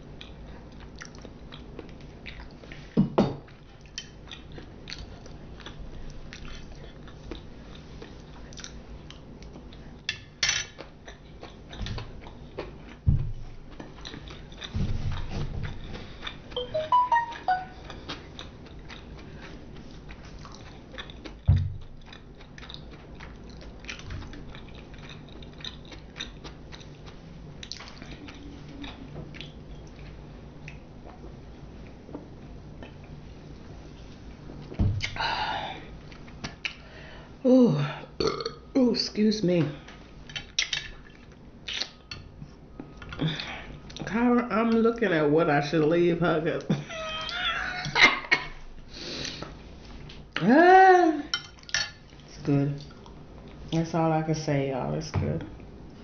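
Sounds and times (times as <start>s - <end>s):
chewing with wet mouth clicks: 0.1s - 2.8s, 3.5s - 9.9s, 13.7s - 16.6s, 17.9s - 31.2s, 40.3s - 42.1s.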